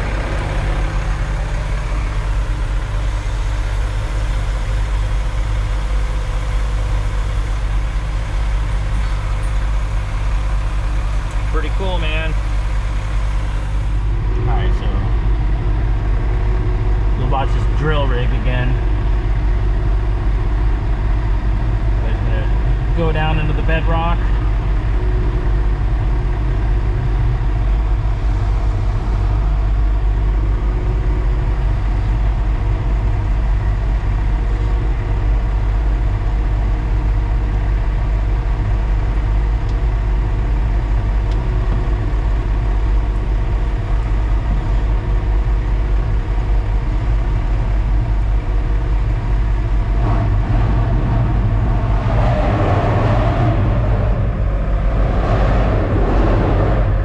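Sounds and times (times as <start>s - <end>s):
loud rough noise: 0.0s - 18.8s, 22.0s - 36.1s, 40.3s - 57.0s
diesel truck engine running: 0.0s - 57.0s.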